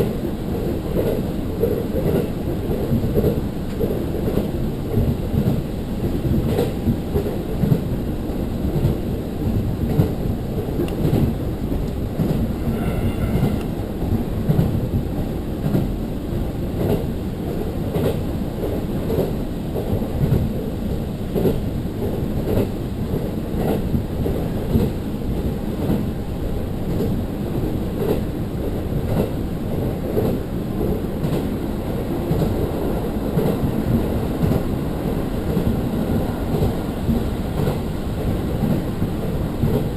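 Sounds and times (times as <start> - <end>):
railcar engine and wheels rumble: 0.0 - 39.9
brief high tone: 12.6 - 13.7.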